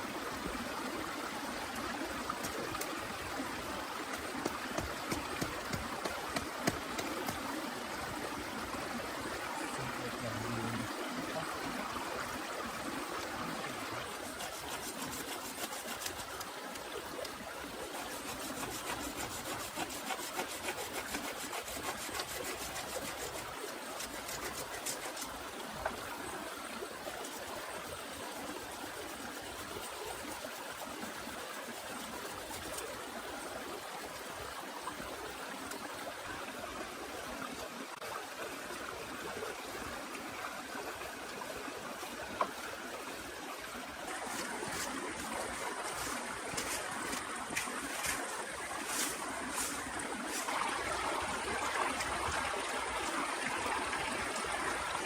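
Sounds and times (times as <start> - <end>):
water trickling: 0.4 - 36.1.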